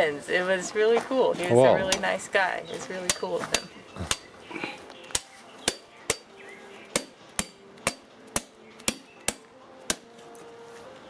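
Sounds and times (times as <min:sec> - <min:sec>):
blade hacking coconut: 0:05.1 - 0:06.3, 0:06.9 - 0:10.1.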